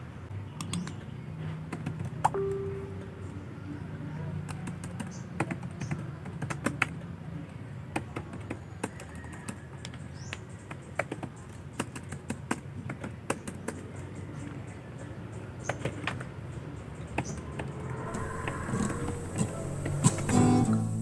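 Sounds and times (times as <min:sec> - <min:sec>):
keyboard typing clicks: 0:00.6 - 0:01.0, 0:01.7 - 0:03.4, 0:04.4 - 0:14.6.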